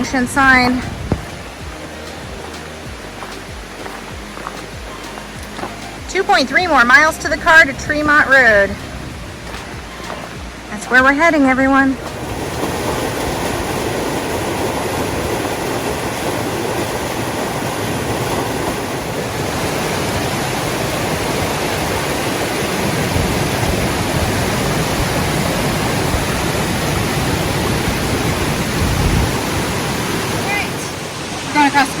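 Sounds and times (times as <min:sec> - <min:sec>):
low rumble: 0:00.0 - 0:14.5
rushing stream water: 0:00.0 - 0:32.0.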